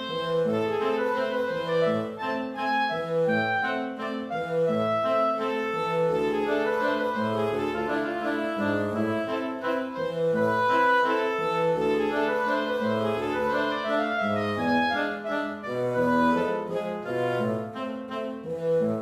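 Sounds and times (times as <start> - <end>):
piano: 0.0 - 19.0
woodwind melody: 0.0 - 19.0.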